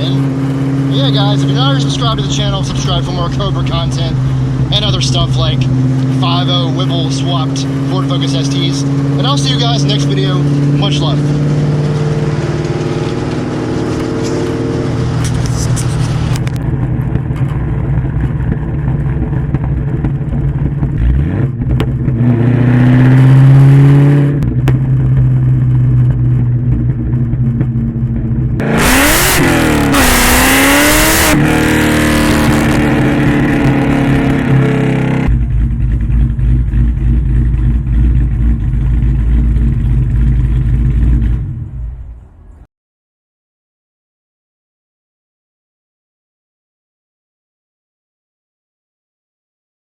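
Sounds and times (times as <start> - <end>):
supercharged car engine revving: 0.0 - 26.2, 28.5 - 41.8.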